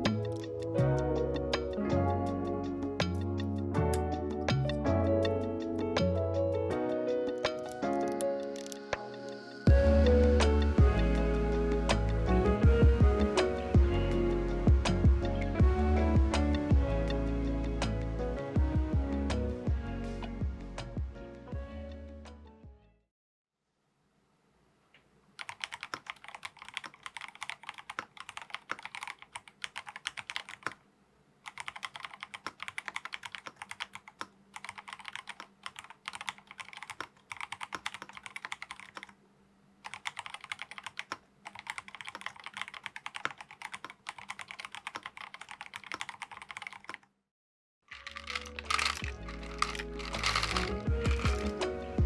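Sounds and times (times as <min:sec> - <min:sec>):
mechanical keyboard typing: 0:07.4 - 0:08.9, 0:25.4 - 0:30.8, 0:31.4 - 0:39.2, 0:39.8 - 0:47.1, 0:47.9 - 0:51.7.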